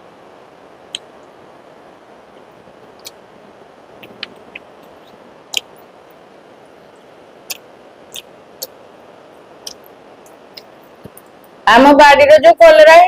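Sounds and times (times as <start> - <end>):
faint steady hiss: 0.0 - 13.0
mouth clicks and smacks: 0.8 - 1.4, 2.9 - 3.2, 4.0 - 5.9, 7.4 - 8.8, 9.6 - 11.4.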